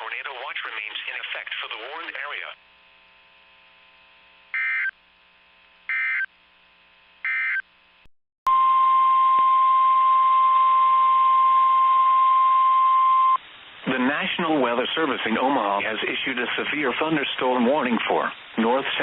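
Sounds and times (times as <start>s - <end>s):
steady warning alarm tone: 4.6s - 4.9s, 5.9s - 6.3s.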